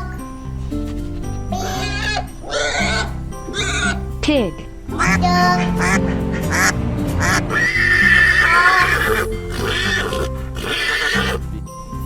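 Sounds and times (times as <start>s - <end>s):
cheerful children's music: 0.0s - 12.0s
horse whinnying: 7.5s - 11.6s.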